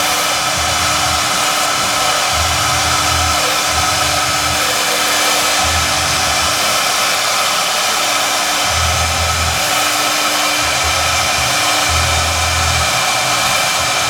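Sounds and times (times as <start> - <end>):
router spindle hissing: 0.0 - 14.0
low hum: 8.6 - 14.0.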